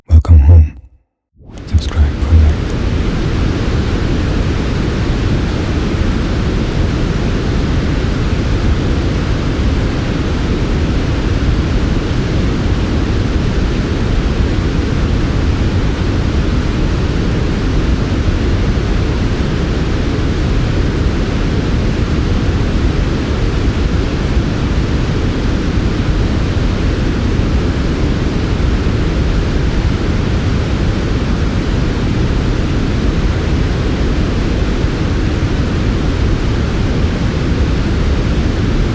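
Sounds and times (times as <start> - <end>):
low synthetic noise: 0.1 - 2.8.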